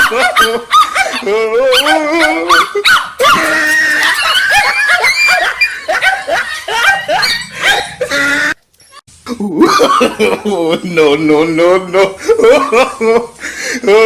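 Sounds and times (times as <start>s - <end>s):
people laughing: 0.0s - 8.6s, 9.3s - 14.0s
people screaming: 3.2s - 8.6s.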